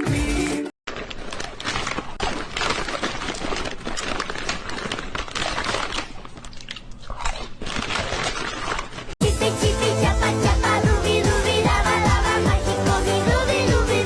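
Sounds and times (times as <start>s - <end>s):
crunching and crackling: 0.9s - 9.2s.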